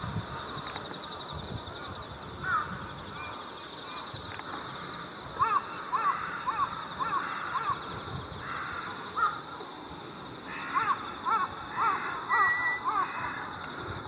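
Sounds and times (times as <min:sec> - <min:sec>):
crows cawing: 0:02.4 - 0:02.8, 0:05.4 - 0:09.4, 0:10.5 - 0:13.6.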